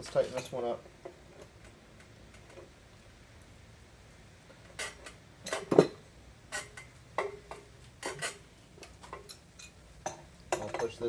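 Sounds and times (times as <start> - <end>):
metal tool clinking on fitting: 9.1 - 11.0.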